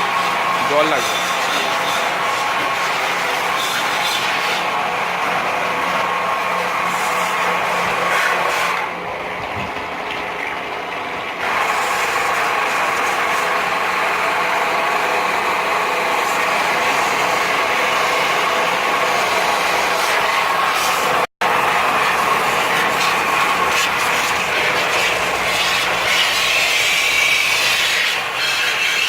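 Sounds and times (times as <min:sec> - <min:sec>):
pressure washer spray hissing: 0:22.0 - 0:29.0.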